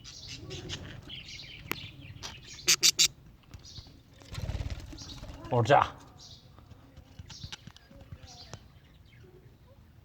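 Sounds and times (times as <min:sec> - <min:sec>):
budgerigars chattering and chirping: 0:00.0 - 0:04.0.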